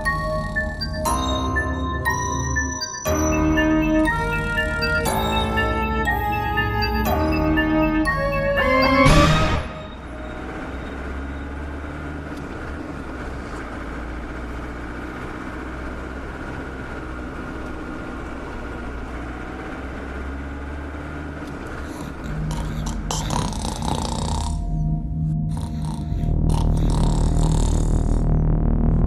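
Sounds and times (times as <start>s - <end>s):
steady low rumble: 22.1s - 29.0s.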